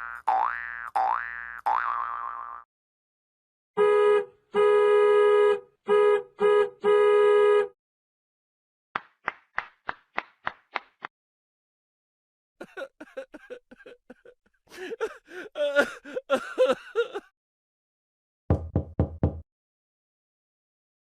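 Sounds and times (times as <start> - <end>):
buzzy horn blasts: 3.8 - 7.8.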